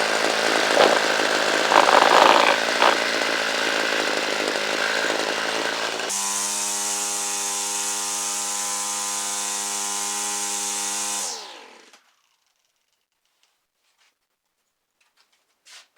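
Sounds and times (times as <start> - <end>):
string trimmer engine running: 0.0 - 6.1.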